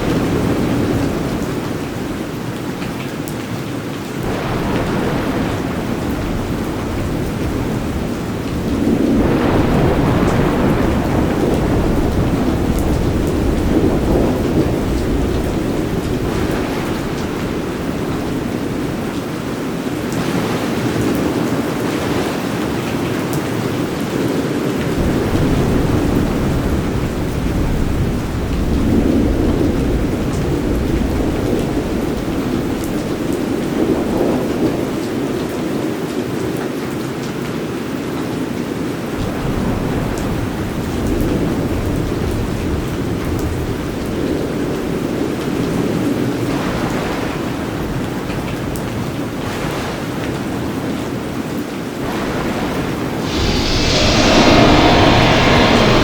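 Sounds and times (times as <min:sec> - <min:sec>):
steady rain: 0:00.0 - 0:56.0
low rumble of thunder: 0:04.2 - 0:19.6, 0:24.9 - 0:34.8, 0:52.0 - 0:56.0.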